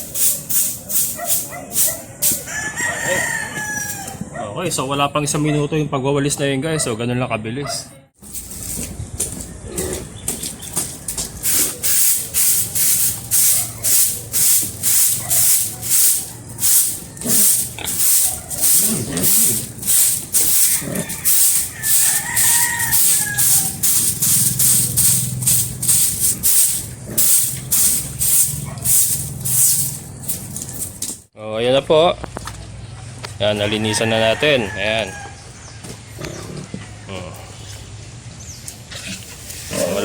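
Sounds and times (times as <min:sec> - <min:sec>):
stiff broom sweeping concrete: 0:00.0 - 0:04.0, 0:08.2 - 0:09.6, 0:10.3 - 0:31.3, 0:39.0 - 0:40.0.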